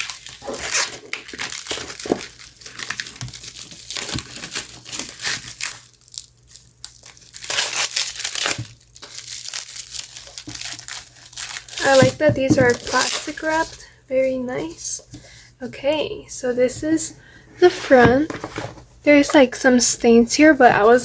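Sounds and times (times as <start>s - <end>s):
plastic wrapping crinkling: 0.0s - 15.2s.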